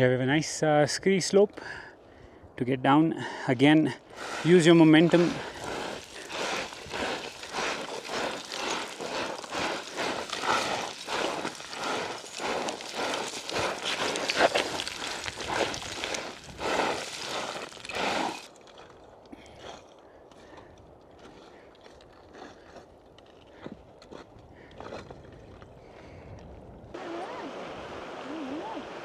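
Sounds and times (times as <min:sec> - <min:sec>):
boots crunching on gravel: 0:04.2 - 0:19.1.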